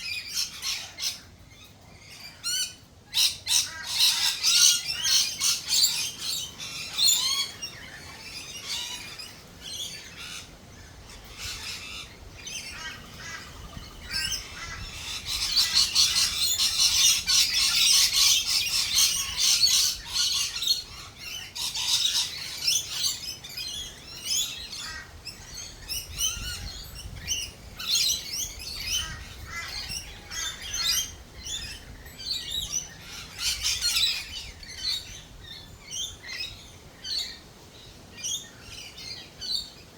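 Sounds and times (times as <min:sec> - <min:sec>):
birds chirping and squawking: 0:00.0 - 0:39.9.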